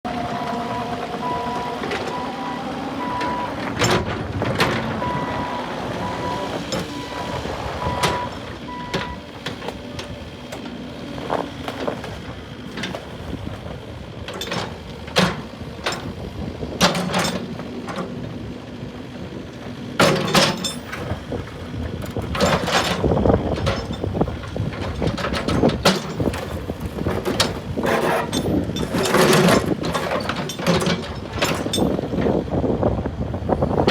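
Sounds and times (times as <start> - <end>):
excavator diesel engine humming: 0.0 - 33.9
beeping alarm: 0.6 - 3.6, 5.0 - 9.2
metallic clanks and knocks: 20.0 - 21.1, 24.7 - 32.4.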